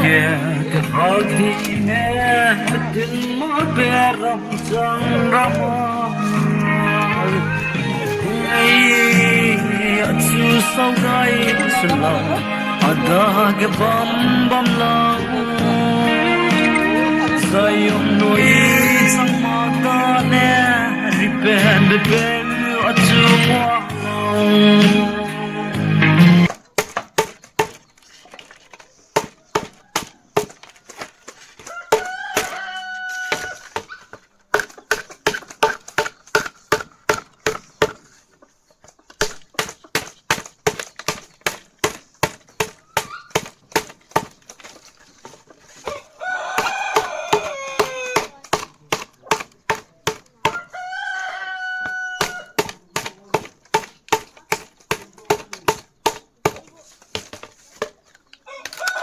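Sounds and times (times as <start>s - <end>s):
blade chopping bamboo: 26.5s - 38.1s, 39.1s - 50.9s, 51.8s - 58.0s
rooster crowing: 31.6s - 33.7s, 45.9s - 48.3s, 50.5s - 52.6s, 58.4s - 59.0s.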